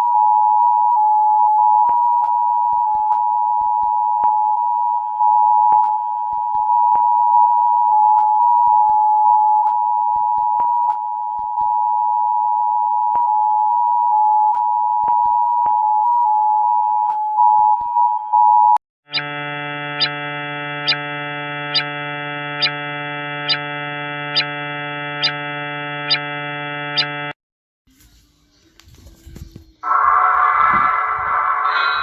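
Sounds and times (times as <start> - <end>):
harsh buzzing alarm tone: 19.0 - 27.4, 29.8 - 32.0.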